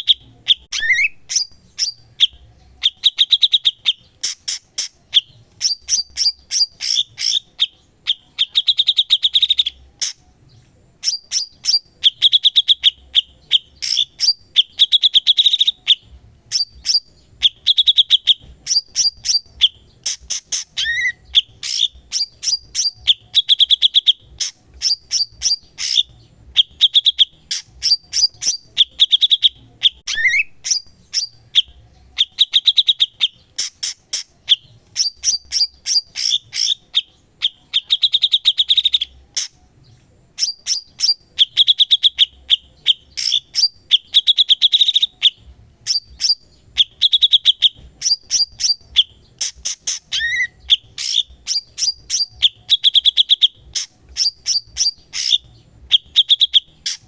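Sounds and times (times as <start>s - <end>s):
buzzy bird trill: 0.0s - 57.0s
songbird singing: 0.0s - 57.0s
short rising bird whistle: 0.7s - 2.0s, 30.1s - 30.8s.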